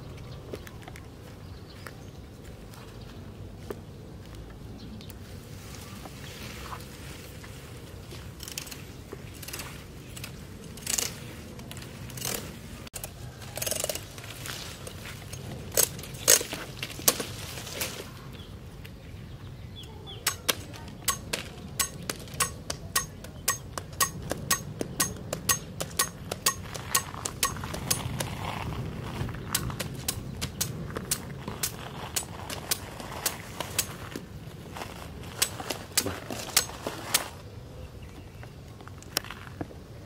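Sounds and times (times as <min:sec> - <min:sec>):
hammer striking metal: 0:20.3 - 0:28.2
knocks and scrapes: 0:20.3 - 0:34.2, 0:34.8 - 0:37.4.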